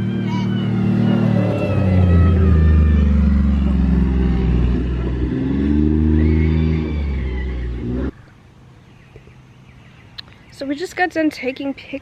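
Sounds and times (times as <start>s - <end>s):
vehicle engine revving: 0.0s - 8.2s.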